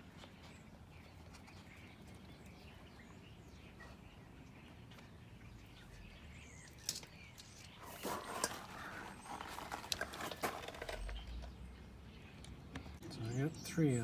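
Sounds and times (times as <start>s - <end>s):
plastic rubbing and scraping: 7.4s - 11.5s.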